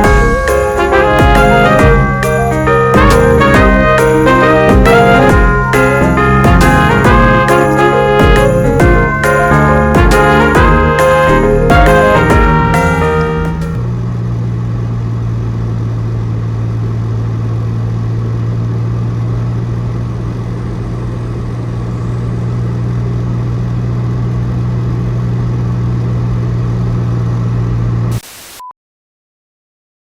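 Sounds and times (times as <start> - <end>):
low mechanical hum: 12.6 - 28.2.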